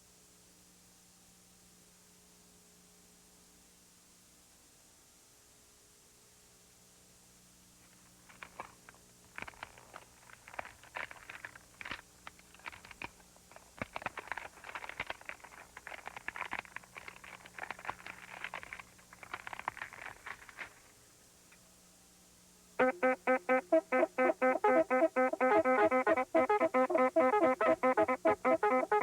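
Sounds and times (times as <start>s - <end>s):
crackling and rustling clicks: 7.8s - 21.6s
steady low hum: 13.2s - 29.0s.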